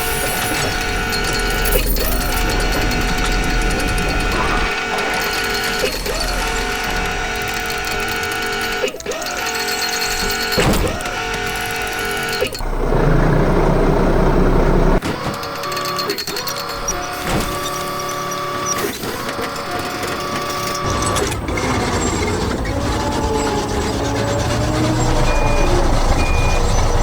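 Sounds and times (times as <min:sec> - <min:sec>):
heavy mechanical rumble: 0:00.0 - 0:08.8, 0:09.9 - 0:15.0, 0:20.7 - 0:27.0
clunks with whining tones: 0:00.0 - 0:27.0.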